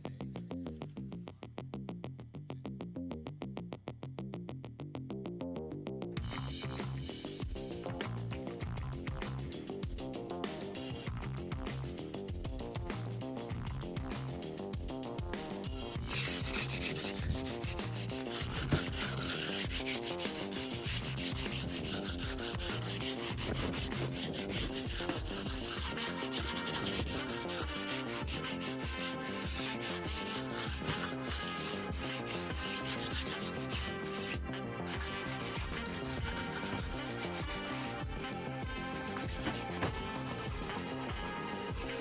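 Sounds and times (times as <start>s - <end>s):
background music: 4.4s - 42.0s
sanding scratchy rubbing: 16.0s - 38.0s, 38.7s - 42.0s.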